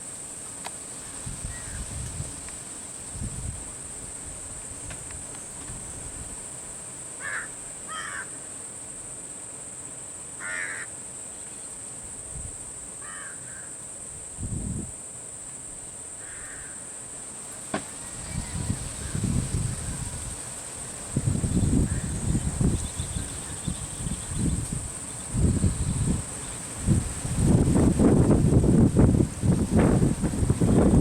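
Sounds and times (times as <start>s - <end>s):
insect drone: 0.0s - 31.0s
crows cawing: 7.2s - 8.4s, 10.4s - 10.9s, 13.0s - 13.8s, 16.2s - 16.9s.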